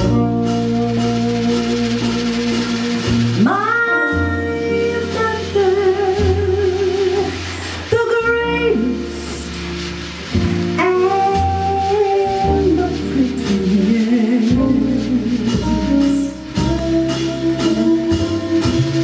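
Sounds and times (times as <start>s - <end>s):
jazz band playing: 0.0s - 19.0s
walking bass line: 0.0s - 19.0s
woman singing with vibrato: 3.4s - 9.6s, 10.8s - 19.0s.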